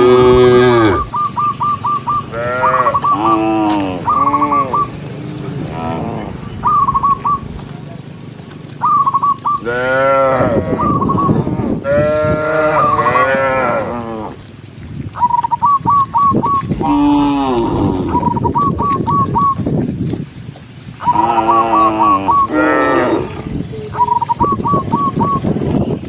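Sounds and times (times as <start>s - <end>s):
cattle mooing: 0.0s - 1.2s, 2.1s - 6.4s, 9.6s - 14.4s, 16.7s - 18.9s, 21.0s - 23.6s.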